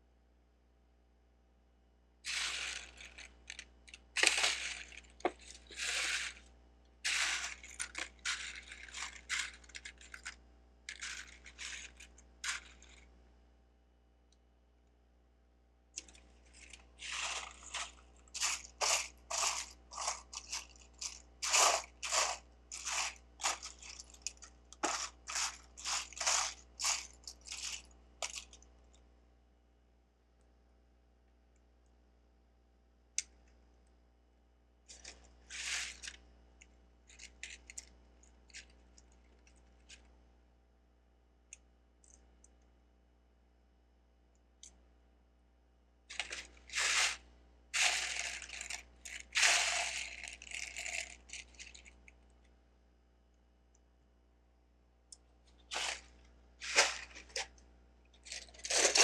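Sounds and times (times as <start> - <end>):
plastic bricks clattering: 2.3 - 6.5, 7.1 - 13.0, 16.0 - 28.6, 34.9 - 36.2, 46.1 - 47.2, 47.8 - 51.9, 58.2 - 59.0.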